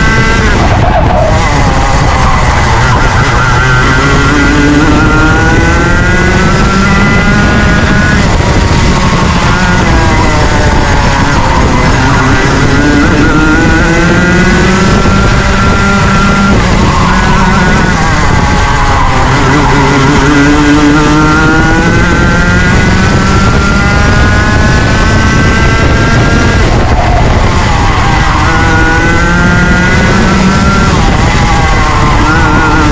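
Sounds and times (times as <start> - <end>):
kart engine at race pace: 0.0 - 32.9.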